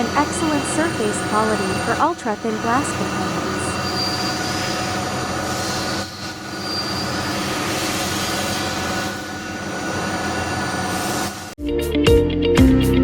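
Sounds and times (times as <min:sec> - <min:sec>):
wire saw hissing and squealing: 0:00.4 - 0:09.3
guitar music: 0:11.6 - 0:13.0.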